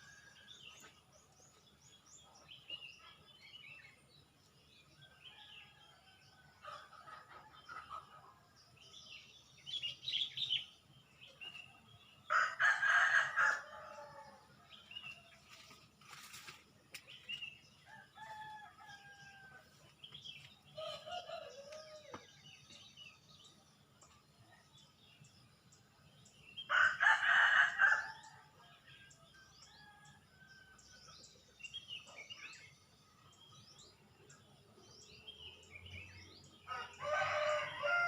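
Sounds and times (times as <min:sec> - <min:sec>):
rooster crowing: 0:36.7 - 0:38.0.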